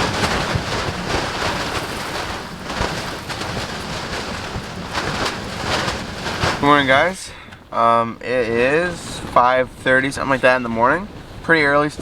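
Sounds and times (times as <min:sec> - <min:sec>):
blizzard wind buffeting tent: 0:00.0 - 0:12.0
wind gusts on microphone: 0:00.0 - 0:12.0.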